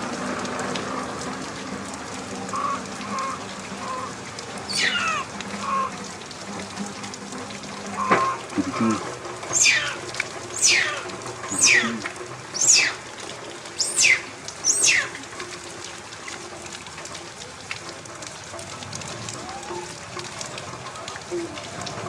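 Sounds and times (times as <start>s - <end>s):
rain hissing: 0.0s - 22.0s
trickling water: 0.0s - 22.0s
baby monkey crying: 4.7s - 5.9s, 9.5s - 13.0s, 13.8s - 15.2s.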